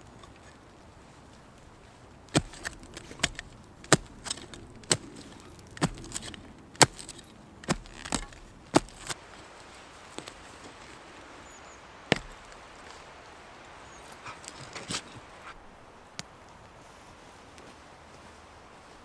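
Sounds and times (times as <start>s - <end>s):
shovel chopping into soil: 2.3s - 9.2s, 12.1s - 12.6s.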